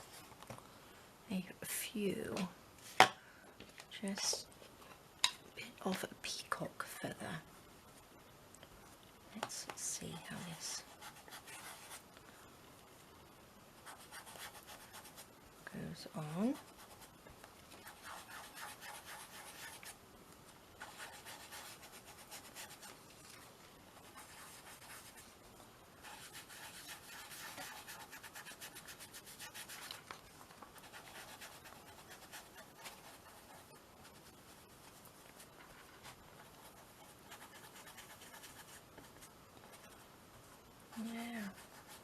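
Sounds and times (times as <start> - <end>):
faint rubbing and scratching: 9.4 - 12.0, 15.9 - 20.0, 20.8 - 42.0.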